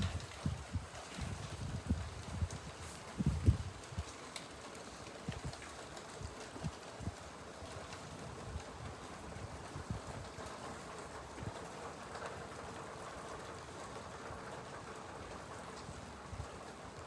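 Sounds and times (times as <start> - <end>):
gusting wind: 0.0 - 4.1
wind buffeting microphone: 0.0 - 4.1
steady rain falling: 0.0 - 17.0.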